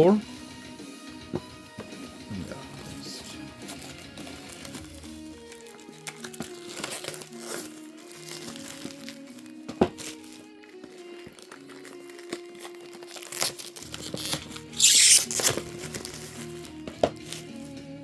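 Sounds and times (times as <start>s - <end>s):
background music: 0.0s - 18.0s
packaging crinkling and tearing: 2.6s - 17.8s
handling knocks: 9.6s - 10.2s.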